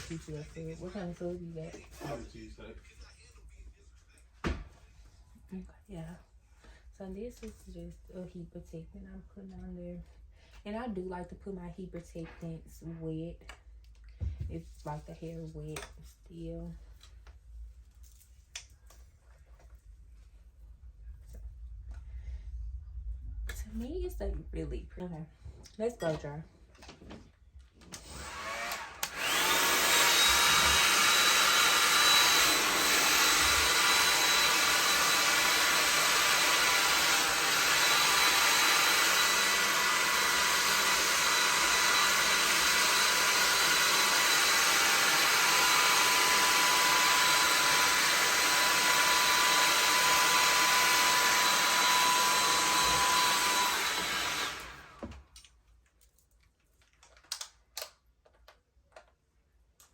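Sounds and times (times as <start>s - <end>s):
hair dryer blowing: 0.0s - 2.7s, 27.8s - 55.2s.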